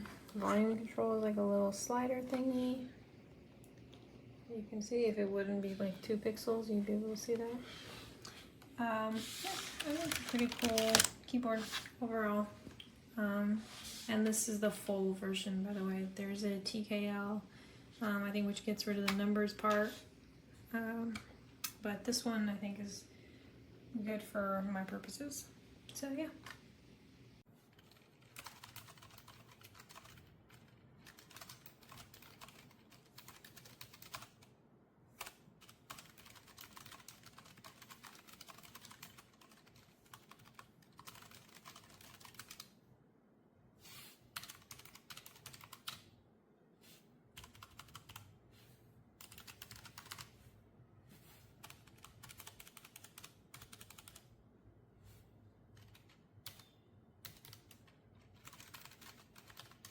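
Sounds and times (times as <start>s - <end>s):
rapid keyboard typing: 9.4s - 11.3s, 27.8s - 34.6s, 35.2s - 42.8s, 44.4s - 46.1s, 47.4s - 48.4s, 49.2s - 50.4s, 51.6s - 54.3s, 55.7s - 59.9s.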